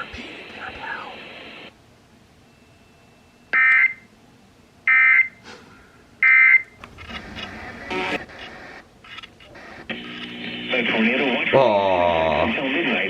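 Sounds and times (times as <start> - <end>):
faint radio audio: 0.0 - 1.8, 7.0 - 13.0
harsh electronic screech bursts: 7.0 - 8.8, 9.4 - 11.1.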